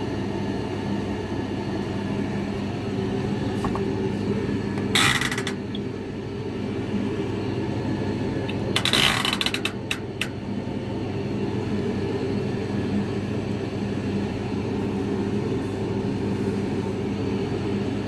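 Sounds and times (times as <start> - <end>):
washing machine humming: 0.0 - 18.0
harsh rattling: 4.8 - 5.7.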